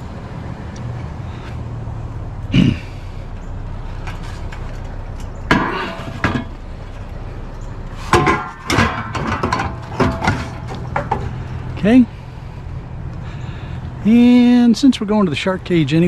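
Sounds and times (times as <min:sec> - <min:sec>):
steady low hum: 0:00.0 - 0:16.0
scrap metal clanking: 0:03.9 - 0:12.7.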